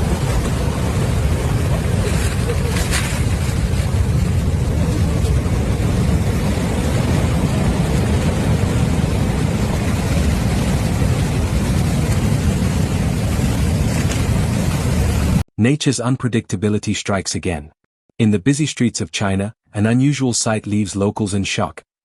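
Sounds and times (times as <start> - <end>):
rushing meltwater and ice: 0.0 - 15.4.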